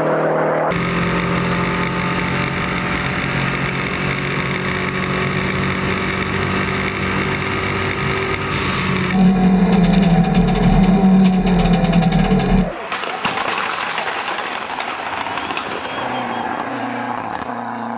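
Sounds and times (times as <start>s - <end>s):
rally car engine running hard: 0.7s - 12.8s.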